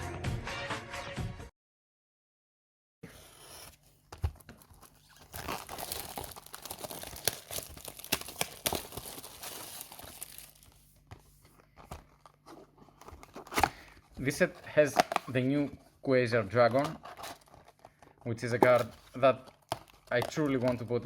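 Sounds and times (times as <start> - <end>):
plastic shrink-wrap tearing and crinkling: 4.6 - 10.8.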